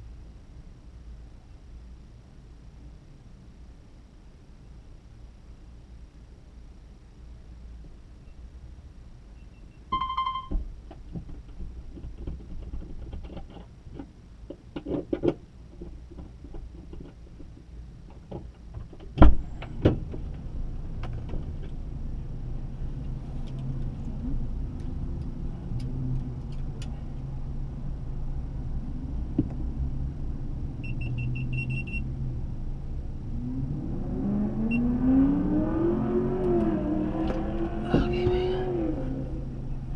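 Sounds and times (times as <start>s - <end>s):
car beep: 9.4s - 10.6s, 30.8s - 32.1s, 34.7s - 34.9s
high beeps: 9.4s - 10.6s, 30.8s - 32.0s
loud thump: 19.2s - 20.0s
car engine running and revving: 32.2s - 39.9s.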